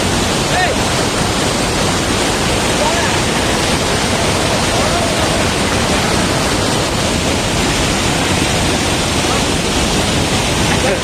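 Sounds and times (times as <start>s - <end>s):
waterfall rushing: 0.0s - 11.0s.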